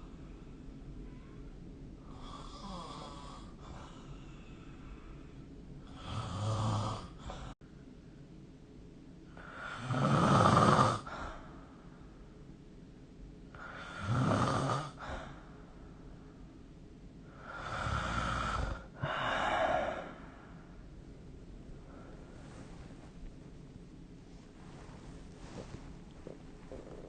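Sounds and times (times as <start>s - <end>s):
person snoring: 2.1s - 4.0s, 5.9s - 7.4s, 9.4s - 11.1s, 13.6s - 15.1s, 25.5s - 27.0s.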